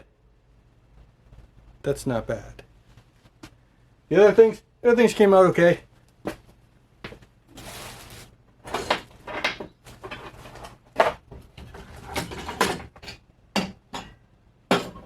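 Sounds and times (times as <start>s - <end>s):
scraping rustle: 7.5s - 12.6s
objects knocking and clicking: 8.7s - 15.0s.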